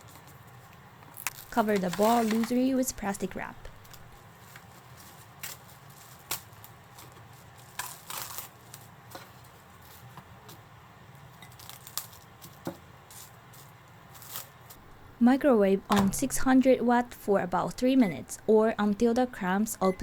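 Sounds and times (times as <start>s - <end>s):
plastic wrap crinkling and tearing: 1.1s - 2.7s, 3.7s - 10.2s, 11.1s - 14.8s.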